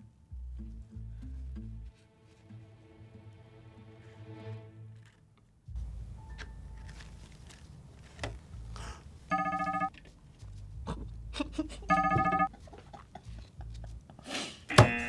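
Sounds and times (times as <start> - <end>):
light clicks and rustles: 5.8 - 9.4
electronic alarm beeps: 9.3 - 9.9, 11.9 - 12.5, 14.7 - 15.0.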